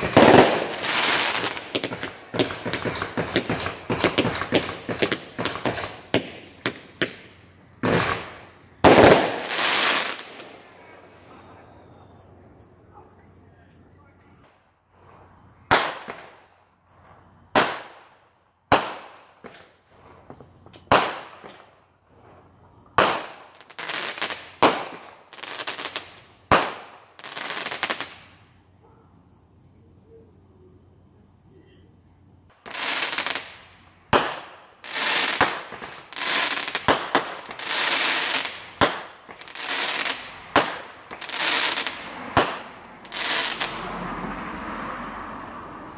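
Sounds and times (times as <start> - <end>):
fireworks banging: 0.0 - 11.4, 15.0 - 16.4, 18.7 - 21.7, 22.9 - 28.3, 32.5 - 44.4
fireworks crackling: 0.0 - 11.6, 15.0 - 28.5, 32.5 - 44.4.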